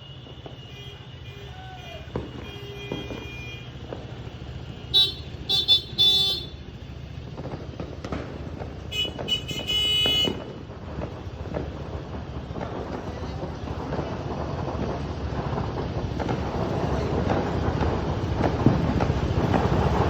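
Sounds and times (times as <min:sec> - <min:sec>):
vehicle horns tooting: 0:00.0 - 0:06.7, 0:08.9 - 0:10.6
street and vehicle noise: 0:00.0 - 0:20.0.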